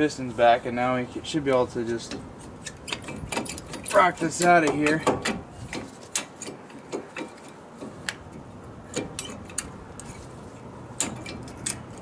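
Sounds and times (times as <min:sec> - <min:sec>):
brake caliper metallic clicks: 0:11.0 - 0:12.0.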